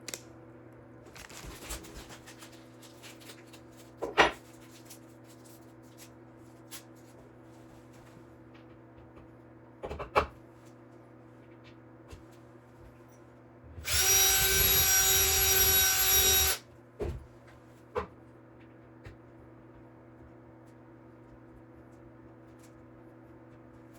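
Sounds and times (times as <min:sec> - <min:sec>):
power drill running: 0:13.8 - 0:16.6.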